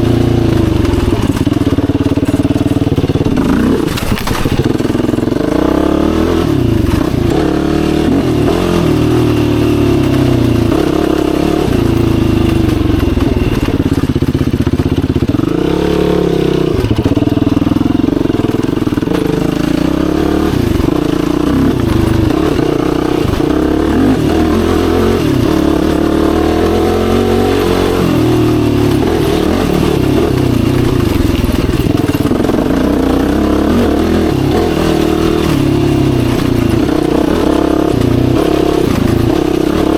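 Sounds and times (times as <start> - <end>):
quad engine revving: 0.0 - 39.9.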